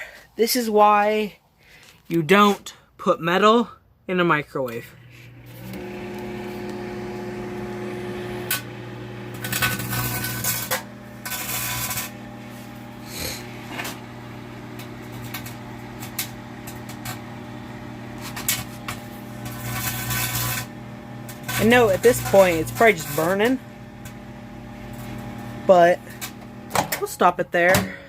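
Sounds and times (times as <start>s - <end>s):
microwave oven humming: 4.8s - 28.0s
metal arcing snaps and crackles: 9.4s - 12.2s, 18.2s - 20.7s.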